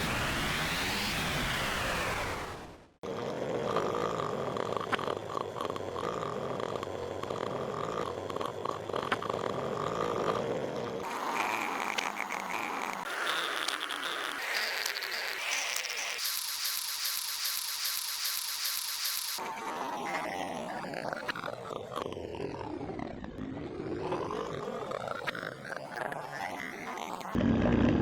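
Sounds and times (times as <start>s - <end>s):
cartoon snoring sound effect: 3.0s - 16.2s, 19.4s - 28.0s.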